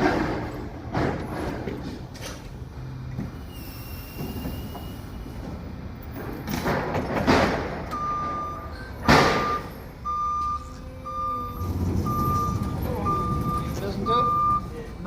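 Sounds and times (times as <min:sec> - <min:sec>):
forklift engine running: 0:00.0 - 0:15.0
reversing alarm beeping: 0:07.9 - 0:14.9.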